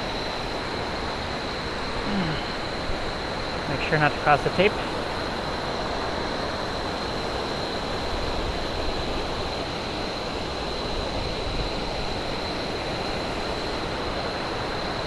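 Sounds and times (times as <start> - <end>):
waterfall roaring: 3.7 - 5.3.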